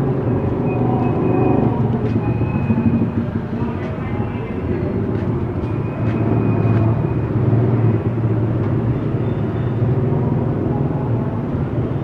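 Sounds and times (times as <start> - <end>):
scooter engine humming: 0.0 - 8.6
road and traffic noise: 0.0 - 12.0.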